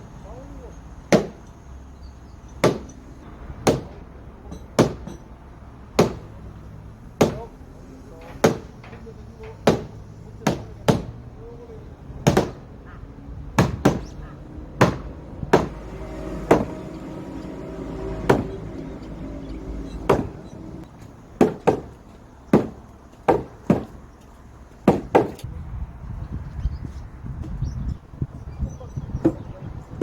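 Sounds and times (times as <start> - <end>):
hammer striking timber: 1.1 - 1.5, 2.6 - 3.0, 3.6 - 5.3, 6.0 - 6.4, 7.2 - 7.6, 8.2 - 11.2, 12.2 - 12.7, 13.6 - 14.2, 14.8 - 19.3, 19.9 - 20.8, 21.4 - 24.0, 24.8 - 25.5.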